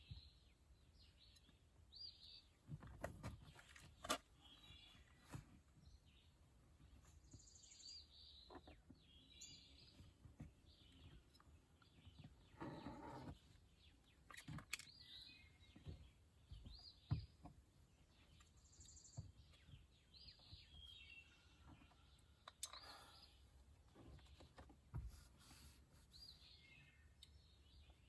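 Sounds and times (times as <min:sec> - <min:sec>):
faint bird chirps: 0:04.4 - 0:06.3, 0:06.9 - 0:28.0.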